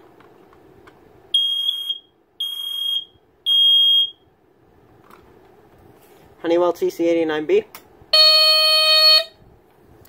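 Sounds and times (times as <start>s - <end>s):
smoke alarm beeps: 1.3s - 4.2s, 8.2s - 9.4s.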